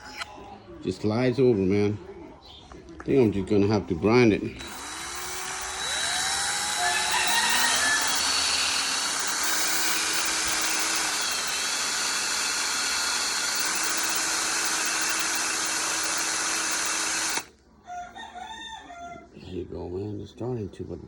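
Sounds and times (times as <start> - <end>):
electric grinder grinding steel: 4.6 - 17.5.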